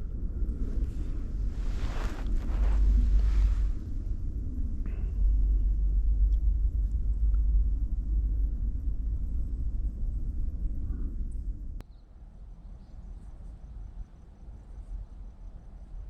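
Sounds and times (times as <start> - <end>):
wind buffeting microphone: 0.0 - 11.8.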